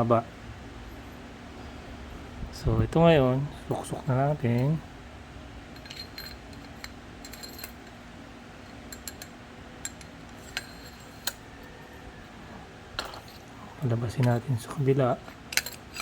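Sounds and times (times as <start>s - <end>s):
background hum: 0.0s - 16.0s
light metallic clicks and clinks: 5.8s - 8.0s, 8.8s - 11.4s, 15.2s - 16.0s.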